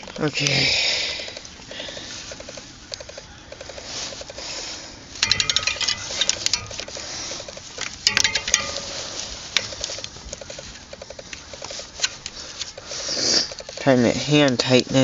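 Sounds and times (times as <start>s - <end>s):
geese honking: 1.2s - 14.6s
socket ratchet clicking: 5.2s - 9.0s.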